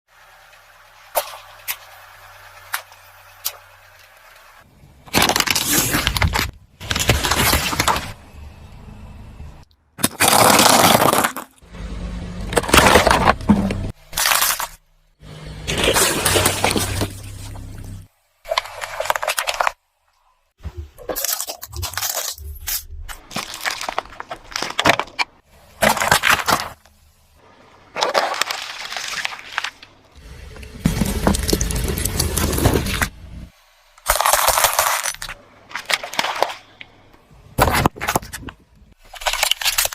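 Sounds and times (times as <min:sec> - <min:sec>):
tyre crushing brittle objects: 0:05.1 - 0:08.2, 0:10.0 - 0:11.6, 0:12.5 - 0:14.8, 0:15.7 - 0:17.7, 0:18.5 - 0:19.8, 0:21.0 - 0:26.9, 0:27.9 - 0:30.0, 0:30.6 - 0:33.1, 0:34.0 - 0:36.8, 0:37.6 - 0:39.9.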